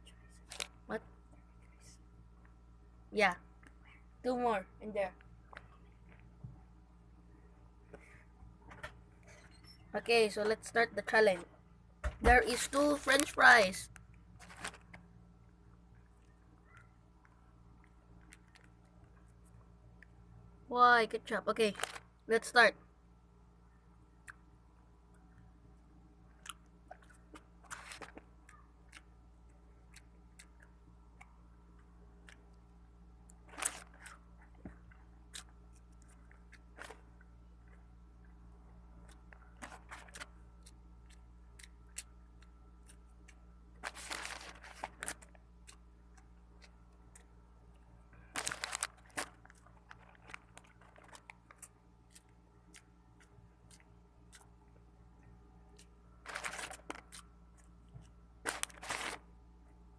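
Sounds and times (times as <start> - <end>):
low hum: 0.0 - 59.9
chewing fries: 24.1 - 59.3.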